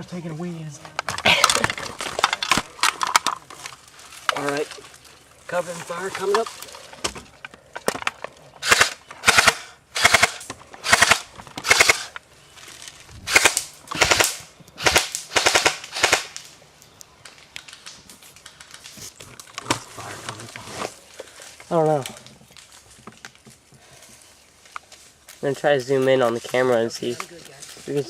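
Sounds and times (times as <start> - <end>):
airsoft guns full-auto bursts: 8.6 - 12.2, 13.3 - 16.4.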